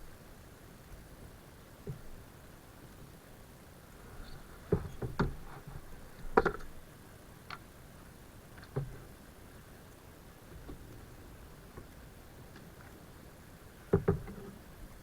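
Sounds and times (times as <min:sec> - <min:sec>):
knocks and clicks on a kayak: 0:04.7 - 0:05.6, 0:06.3 - 0:06.7, 0:08.6 - 0:09.1, 0:13.9 - 0:14.6.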